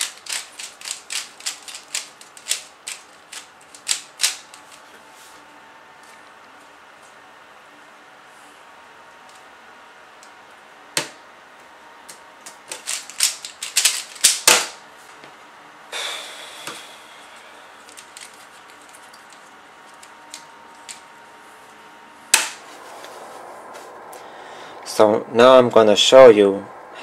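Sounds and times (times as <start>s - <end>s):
puzzle cube clicking turns: 0.0s - 4.8s, 12.7s - 14.5s.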